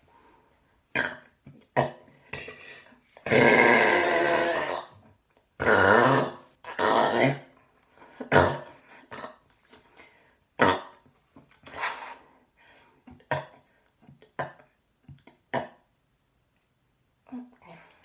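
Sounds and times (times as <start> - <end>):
woman burping: 8.2 - 9.4.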